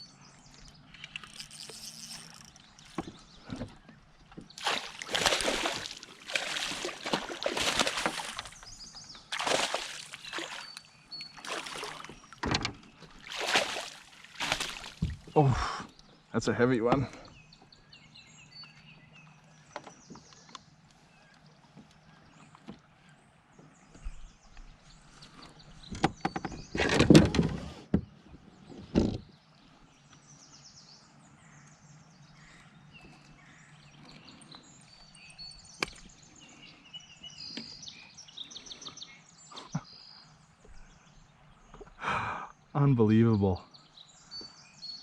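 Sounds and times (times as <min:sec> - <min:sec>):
birds chirping faintly: 0:00.0 - 0:45.0
fish thrashing: 0:04.4 - 0:15.4
knocks against kayak hull: 0:14.5 - 0:15.3.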